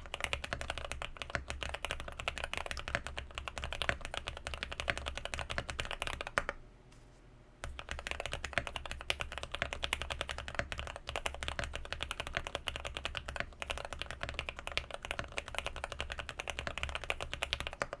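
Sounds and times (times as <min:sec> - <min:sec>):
mechanical keyboard typing: 0:00.0 - 0:06.6, 0:07.6 - 0:18.0.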